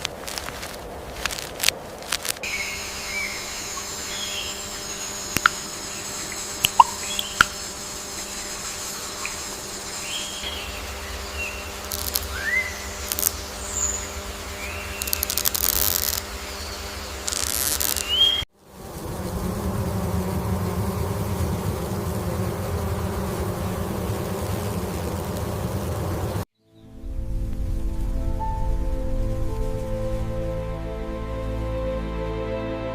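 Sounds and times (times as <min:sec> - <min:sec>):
steady low hum: 0:00.0 - 0:26.4
high insect buzzing: 0:00.0 - 0:26.5
sharp clicks: 0:05.4 - 0:05.6, 0:06.6 - 0:07.6, 0:11.8 - 0:12.4, 0:13.0 - 0:13.4, 0:15.0 - 0:16.3, 0:17.2 - 0:18.1.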